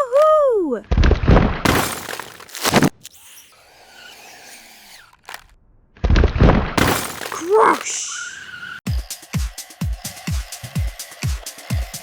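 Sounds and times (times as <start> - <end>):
cartoon rushing crashing noise: 6.8 - 8.4.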